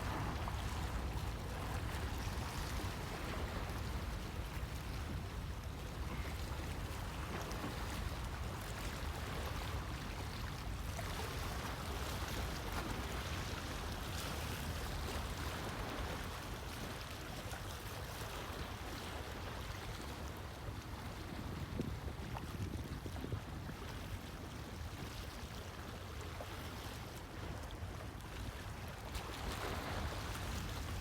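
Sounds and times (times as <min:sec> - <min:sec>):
sea waves washing onto beach: 0:00.0 - 0:17.0, 0:29.0 - 0:31.0.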